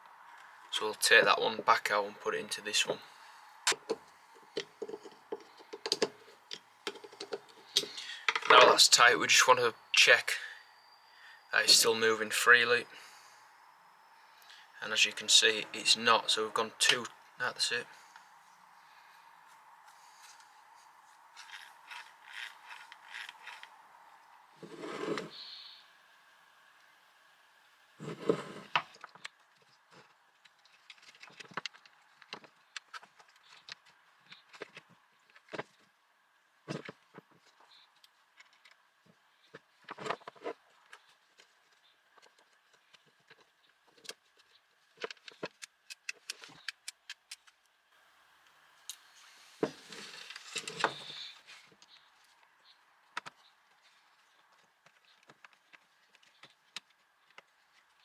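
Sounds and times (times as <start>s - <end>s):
light clicks and taps of parts: 3.7s - 8.6s
rattling scrape: 24.6s - 25.4s
scraping rustle: 24.6s - 25.4s, 49.0s - 52.3s.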